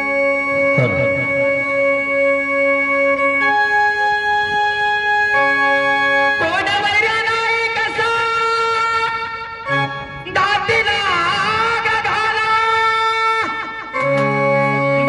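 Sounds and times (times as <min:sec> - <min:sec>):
wavering melody line: 0:00.0 - 0:06.3
organ-like keyboard chords: 0:00.0 - 0:15.0.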